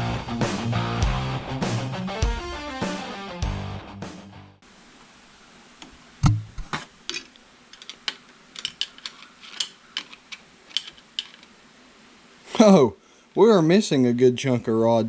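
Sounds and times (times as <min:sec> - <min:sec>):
music: 0:00.0 - 0:04.6
metal clicks from tools and parts: 0:06.3 - 0:11.6.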